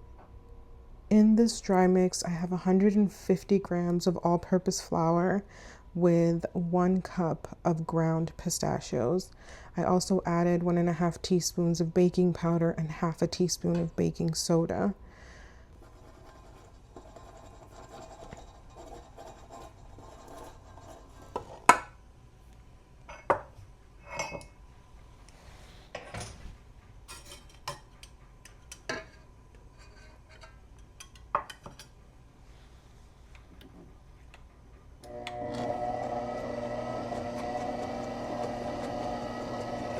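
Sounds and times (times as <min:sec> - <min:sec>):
electric mixer running: 0:35.0 - 0:39.9.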